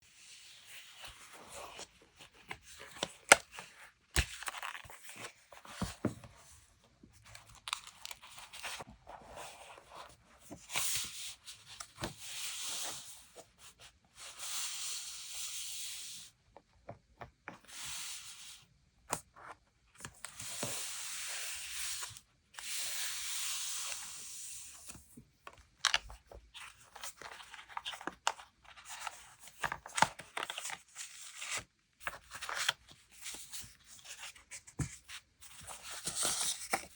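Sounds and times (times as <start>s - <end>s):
paper crinkling and rustling: 0.9s - 6.1s, 7.2s - 11.1s, 25.8s - 36.9s.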